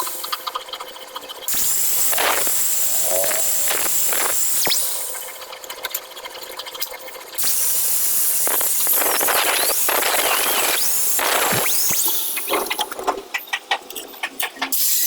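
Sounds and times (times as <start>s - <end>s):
angle grinder cutting: 1.5s - 4.8s.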